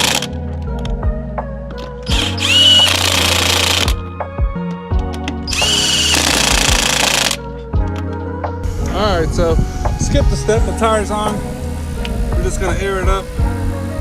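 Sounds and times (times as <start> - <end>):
impact wrench whining: 2.0 - 4.1, 5.4 - 7.4.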